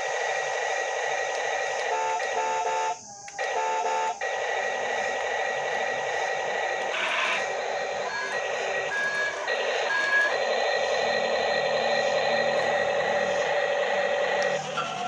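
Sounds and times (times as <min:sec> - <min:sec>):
high electric whir: 0:04.2 - 0:15.0.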